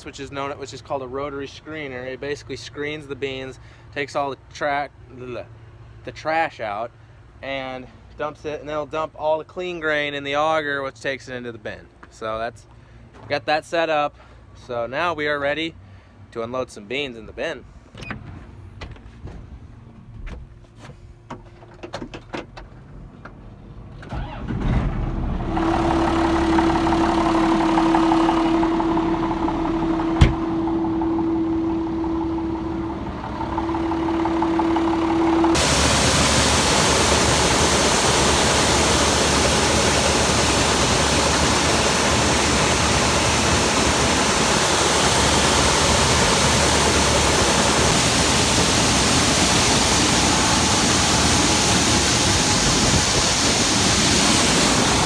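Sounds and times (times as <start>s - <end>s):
engine running with steady whine: 17.9s - 55.0s
loud rushing of grain through augers: 25.4s - 55.0s.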